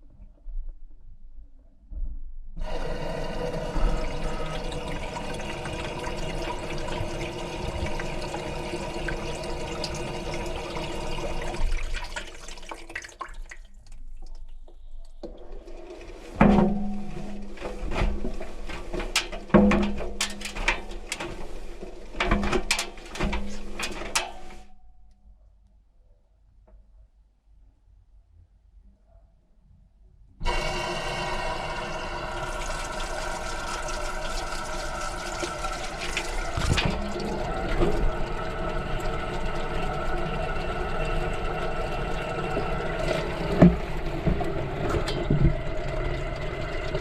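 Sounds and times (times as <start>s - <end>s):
water rushing in washing machine: 2.6s - 14.2s, 15.2s - 24.7s, 30.4s - 47.0s
water sloshing in drum: 2.6s - 24.7s, 32.0s - 47.0s.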